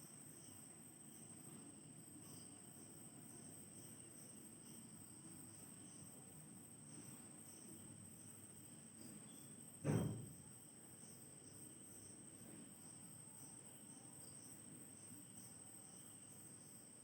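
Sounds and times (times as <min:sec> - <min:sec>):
dull thump: 0:09.8 - 0:10.4.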